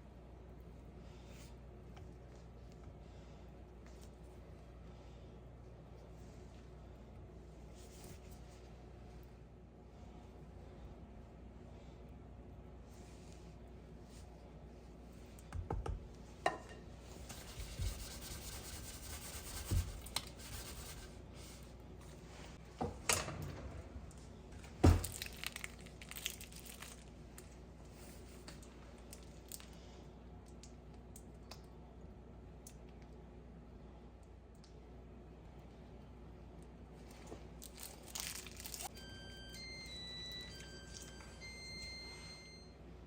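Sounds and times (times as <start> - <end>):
rustling and crinkling: 37.0 - 38.9.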